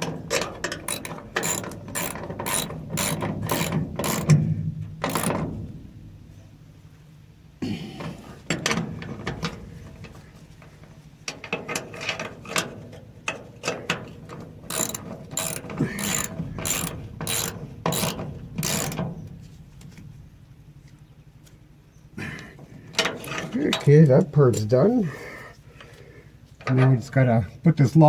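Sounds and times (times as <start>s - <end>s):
ratchet wrench clicking: 0.3s - 4.4s, 5.0s - 5.4s, 14.7s - 19.1s.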